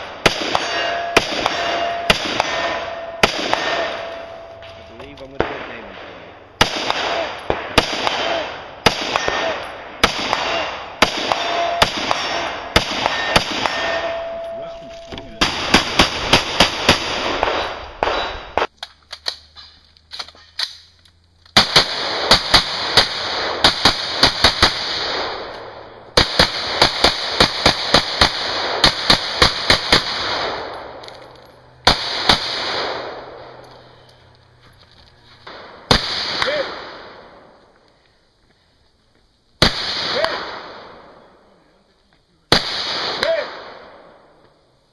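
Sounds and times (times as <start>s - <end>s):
steel targets clanging: 0.0s - 5.3s, 11.3s - 16.1s
rifle shots: 0.0s - 14.5s, 15.2s - 19.6s, 21.5s - 34.1s, 35.4s - 37.6s, 39.6s - 41.4s, 42.5s - 44.4s.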